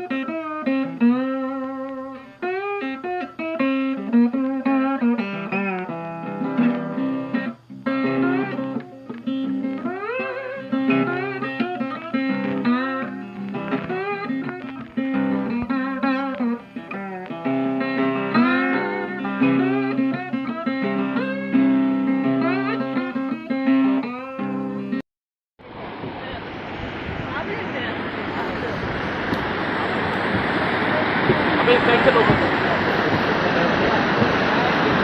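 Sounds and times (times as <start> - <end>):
plucked guitar music: 0.0 - 25.0, 25.8 - 35.0
steady rushing noise: 25.6 - 35.0.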